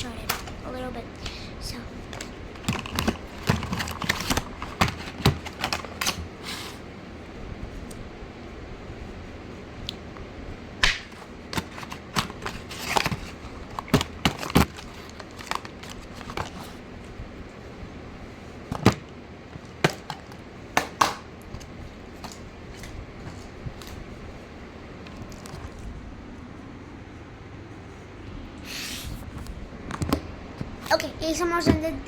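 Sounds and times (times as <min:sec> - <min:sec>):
packaging crinkling: 0:02.0 - 0:06.7, 0:11.2 - 0:16.9
packaging taps and clicks: 0:02.1 - 0:06.3, 0:10.8 - 0:16.7.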